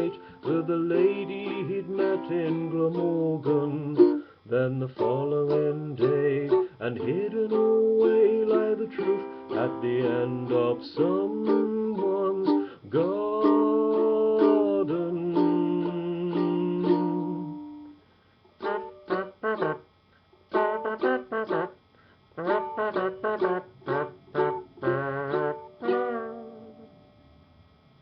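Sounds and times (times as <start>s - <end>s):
person singing: 0.0s - 18.0s, 18.6s - 19.8s, 22.4s - 26.9s
strummed string instrument: 0.0s - 18.0s, 18.6s - 19.8s, 20.5s - 21.8s, 22.4s - 26.9s.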